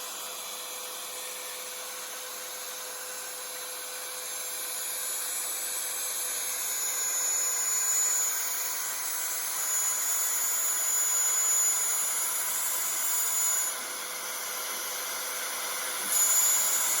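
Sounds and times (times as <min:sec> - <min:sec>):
router spindle whine: 0:00.0 - 0:17.0
metal cutting hiss: 0:14.9 - 0:17.0.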